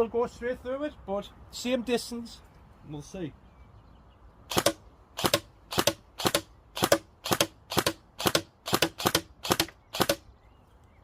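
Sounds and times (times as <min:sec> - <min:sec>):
airsoft gun shots: 0:04.5 - 0:10.2.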